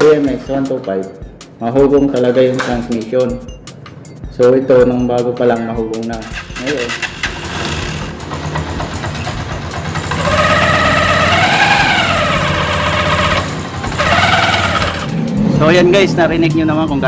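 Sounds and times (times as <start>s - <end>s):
motorcycle engine under load: 6.2s - 15.4s.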